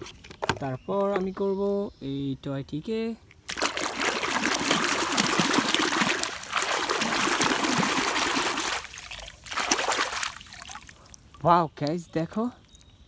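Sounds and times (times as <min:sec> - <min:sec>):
running water splashing: 0:03.5 - 0:12.0.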